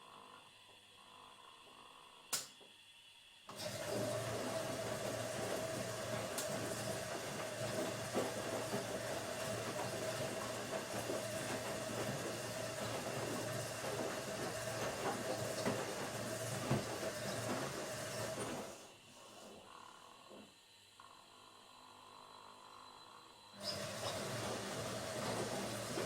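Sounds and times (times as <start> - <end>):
washing machine rushing hiss: 3.5 - 19.6, 23.5 - 26.0
mid-pitched whine: 19.0 - 23.6.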